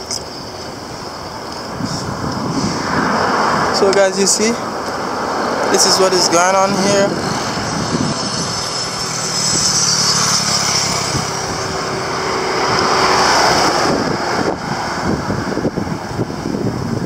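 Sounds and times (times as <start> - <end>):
vehicle passing by: 1.7 - 17.0
outdoor din: 5.3 - 14.7.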